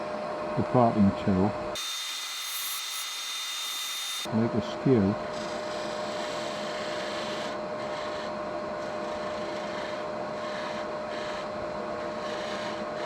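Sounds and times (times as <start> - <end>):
lathe motor whine: 1.6 - 4.4, 5.1 - 13.0
tool scraping spinning wood: 1.8 - 4.3, 5.2 - 13.0.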